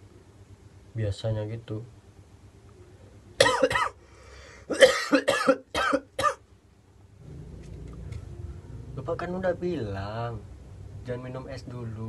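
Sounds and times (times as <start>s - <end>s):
person coughing: 3.4s - 4.0s, 4.7s - 6.4s.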